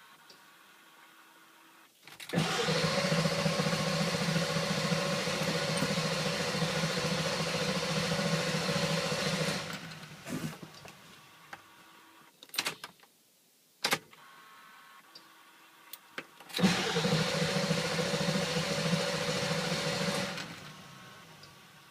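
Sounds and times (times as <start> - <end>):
starter cranking diesel engine: 2.3 - 10.8, 16.6 - 21.7.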